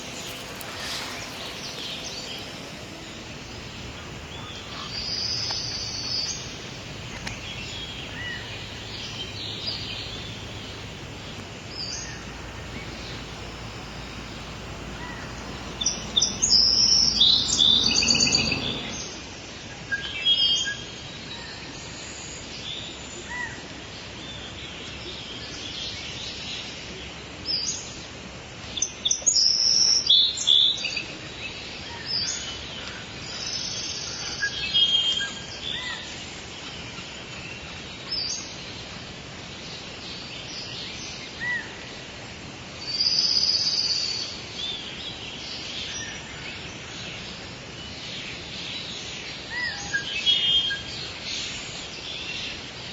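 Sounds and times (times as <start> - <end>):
birds chirping: 0.0 - 19.0
outdoor background hiss: 0.0 - 19.0.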